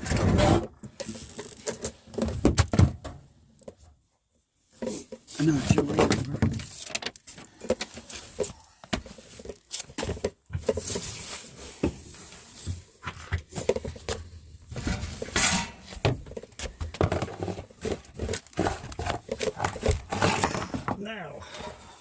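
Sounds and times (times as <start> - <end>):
objects clicking and rattling: 13.0 - 20.9.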